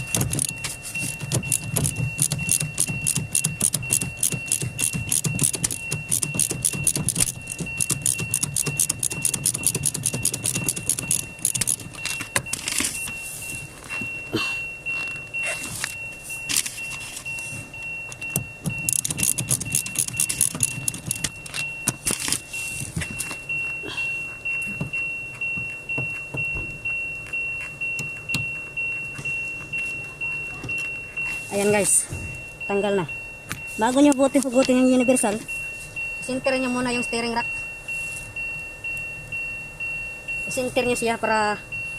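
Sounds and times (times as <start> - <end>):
steady high tone: 0.0 - 41.9
ratchet wrench clicking: 0.1 - 12.8, 18.2 - 22.4.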